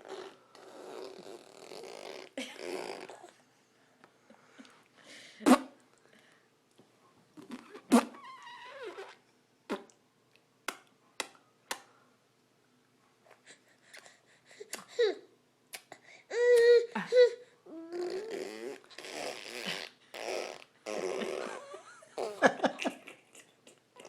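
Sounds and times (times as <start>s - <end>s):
baby blowing raspberries: 0.0s - 3.3s, 17.7s - 21.6s
laughter: 21.2s - 23.8s.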